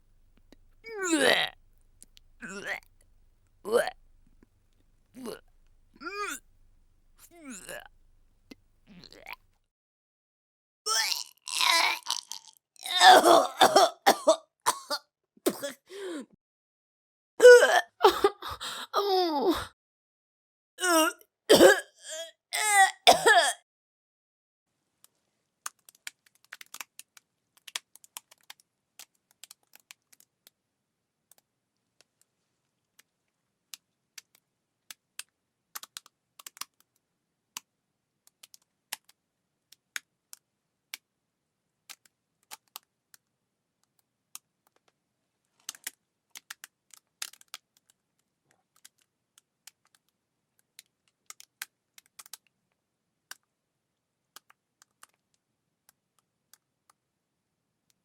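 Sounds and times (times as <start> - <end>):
person retching: 0.9 - 2.9, 3.7 - 4.0, 5.2 - 6.5, 7.2 - 7.9, 8.9 - 9.4, 10.9 - 16.2, 17.4 - 19.7, 20.8 - 23.6.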